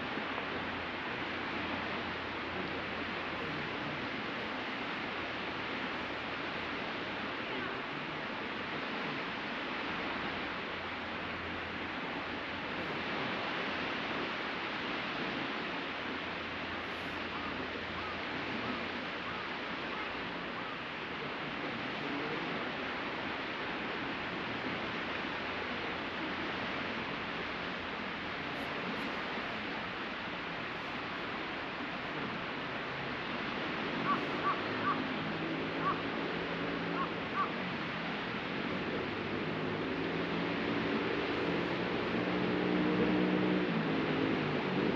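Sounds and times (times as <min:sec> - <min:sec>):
ocean surf breaking: 0:00.0 - 0:44.9
wind: 0:00.0 - 0:44.9
bird calling: 0:19.2 - 0:20.8, 0:34.0 - 0:35.2, 0:35.8 - 0:36.0, 0:36.9 - 0:37.6.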